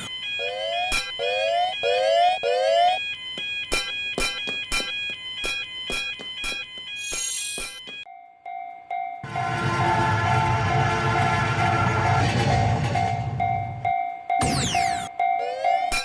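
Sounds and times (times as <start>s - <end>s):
railroad crossing warning bell: 8.1s - 16.0s.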